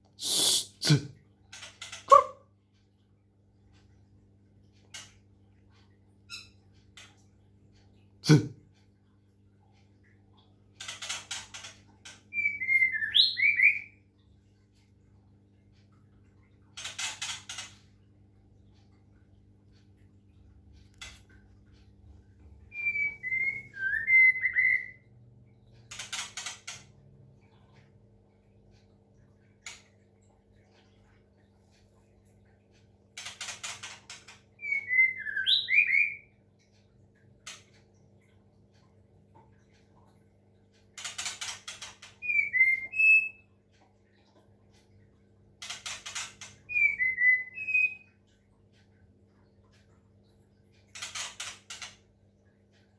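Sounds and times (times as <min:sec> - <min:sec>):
faint steady hum: 0:00.0 - 0:13.1, 0:13.8 - 0:52.9
bird singing whistled notes: 0:12.4 - 0:14.0, 0:22.7 - 0:25.0, 0:34.6 - 0:36.3, 0:42.2 - 0:43.4, 0:46.7 - 0:48.1.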